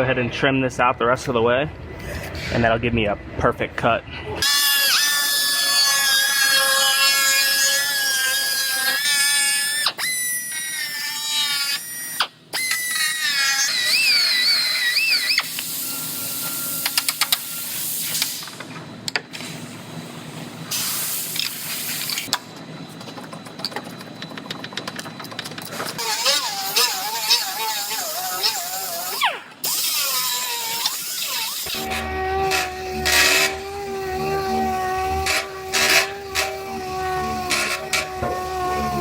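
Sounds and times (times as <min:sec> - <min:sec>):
power cutting tool whining: 0:04.4 - 0:16.6, 0:26.0 - 0:39.0.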